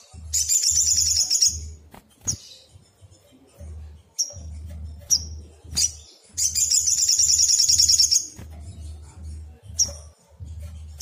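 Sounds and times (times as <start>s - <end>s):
bird rapid trill: 0.4s - 3.0s, 4.1s - 8.5s.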